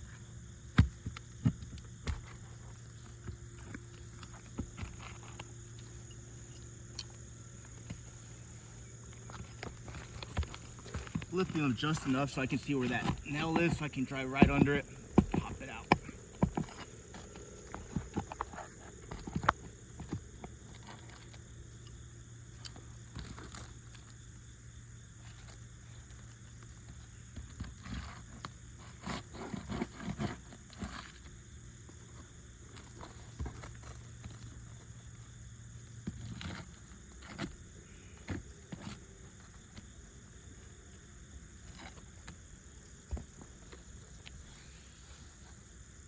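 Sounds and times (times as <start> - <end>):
steady low hum: 0.9 - 22.2.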